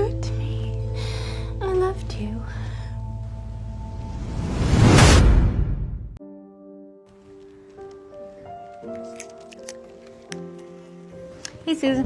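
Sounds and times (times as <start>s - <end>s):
soft sustained chords music: 0.0s - 4.6s.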